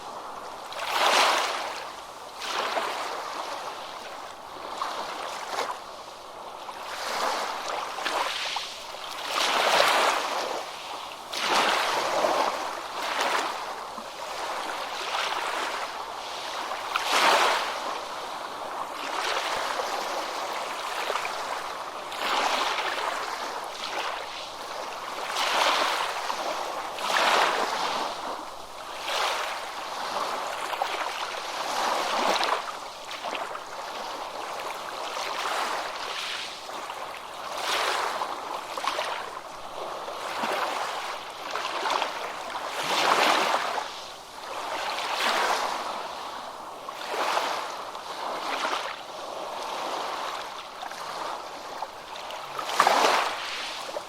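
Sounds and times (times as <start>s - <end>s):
ocean waves washing onto beach: 0.0s - 54.0s.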